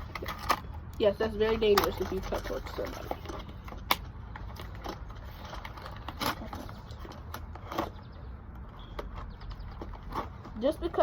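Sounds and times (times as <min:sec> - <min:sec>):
packaging rustling: 0:00.0 - 0:08.0.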